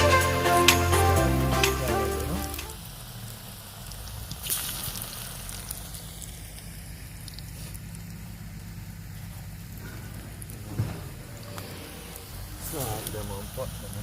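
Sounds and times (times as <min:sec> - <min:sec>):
food sizzling in hot oil: 0:02.7 - 0:07.2.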